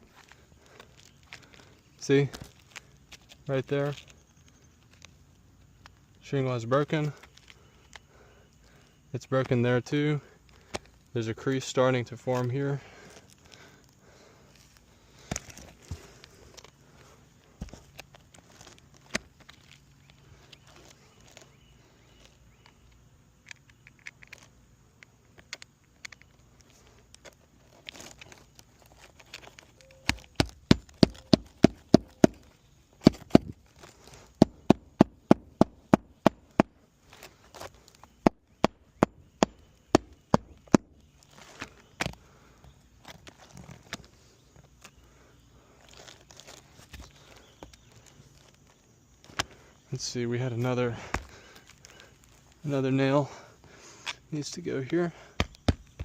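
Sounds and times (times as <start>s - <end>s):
shingles crackling and clicking: 12.3s - 21.6s, 22.2s - 45.0s
hammer driving nails through shingles: 30.0s - 32.4s, 34.4s - 36.7s, 38.2s - 40.8s.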